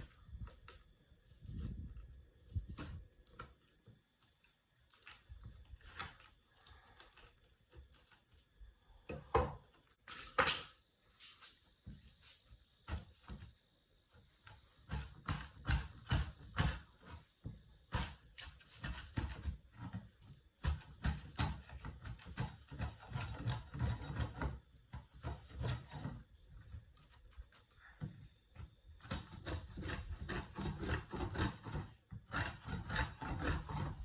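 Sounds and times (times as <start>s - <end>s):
hand tool scraping wood: 20.9s - 24.6s, 25.2s - 26.2s, 29.0s - 34.0s.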